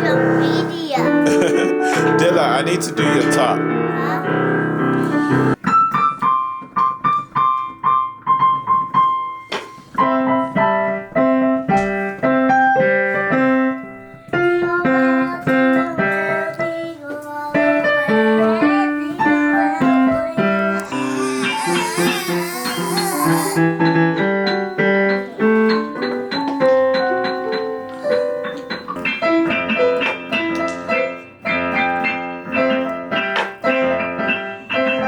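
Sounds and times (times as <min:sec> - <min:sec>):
piano music: 0:00.0 - 0:07.0, 0:17.6 - 0:35.0.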